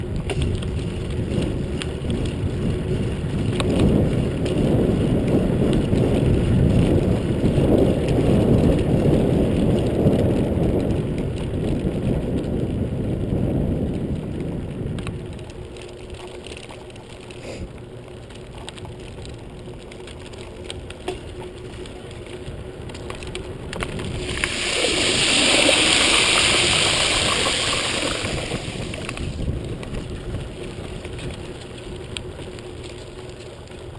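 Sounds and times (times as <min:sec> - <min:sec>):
wind on microphone: 0:00.0 - 0:15.8, 0:21.7 - 0:32.9
bicycle riding rumble: 0:00.0 - 0:33.9.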